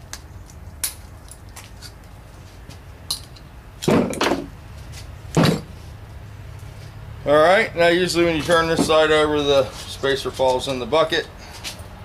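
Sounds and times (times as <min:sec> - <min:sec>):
heavy metal clunks: 0:05.4 - 0:05.7.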